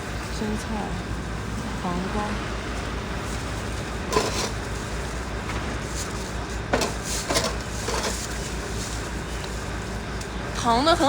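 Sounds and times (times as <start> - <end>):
voices: 0.0 - 3.5, 9.2 - 11.0
low background hum: 0.0 - 11.0.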